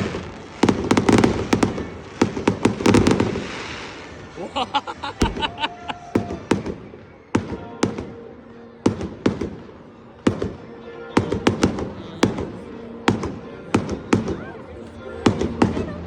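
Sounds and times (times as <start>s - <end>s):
faint music: 0.0s - 16.0s
fireworks bangs: 0.0s - 16.0s
fireworks crackling: 0.0s - 16.0s.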